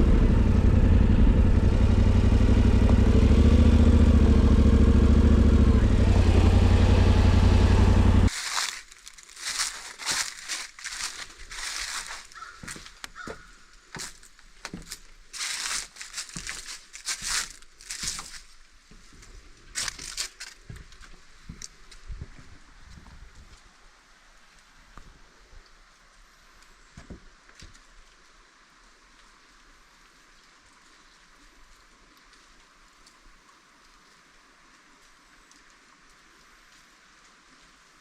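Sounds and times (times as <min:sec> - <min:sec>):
motorcycle engine running: 0:00.0 - 0:08.3
short crunching noises: 0:08.3 - 0:18.6, 0:19.7 - 0:21.8.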